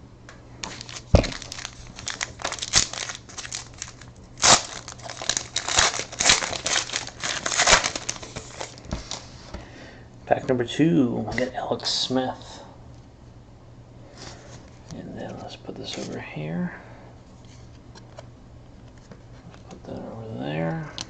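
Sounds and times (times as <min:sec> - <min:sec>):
wrapper tearing and crinkling: 0:00.6 - 0:09.2.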